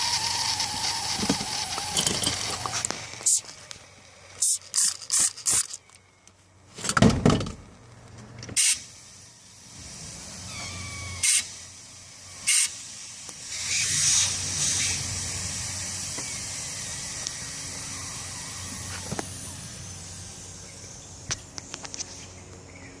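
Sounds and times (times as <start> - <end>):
air hissing: 0.0 - 3.6, 8.6 - 21.6
spray bursts: 0.0 - 3.6, 4.4 - 5.8, 8.6 - 21.0.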